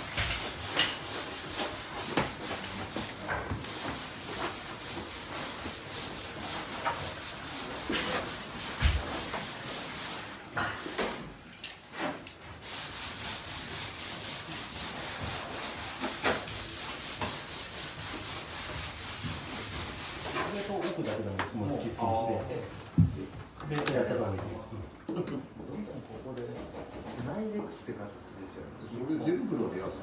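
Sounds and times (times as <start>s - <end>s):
hand sanding wood: 0.0s - 10.5s, 12.0s - 22.4s.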